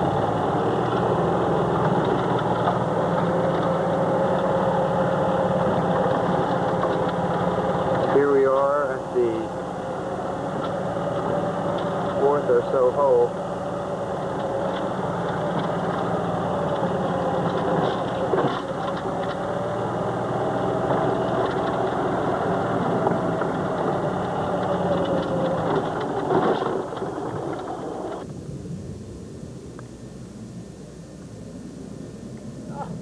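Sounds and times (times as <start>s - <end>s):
engine humming: 0.0s - 33.0s.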